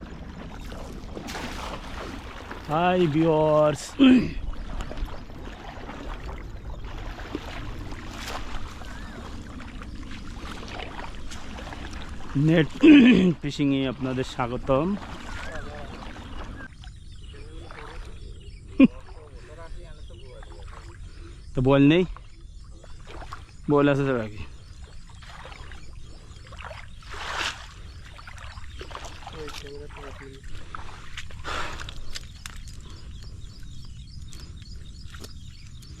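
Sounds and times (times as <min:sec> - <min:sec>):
water sloshing and splashing: 0:00.0 - 0:36.0
faint chirps: 0:15.3 - 0:36.0.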